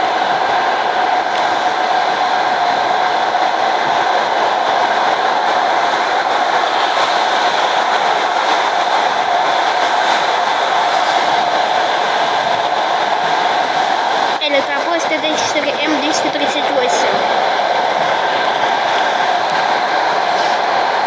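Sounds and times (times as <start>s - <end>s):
train wheels on rail: 0.0s - 21.0s
constant hum: 9.8s - 21.0s.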